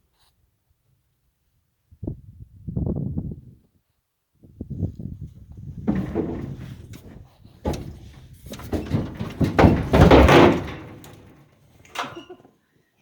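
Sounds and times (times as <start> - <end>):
metal gate clanking: 7.7 - 12.4.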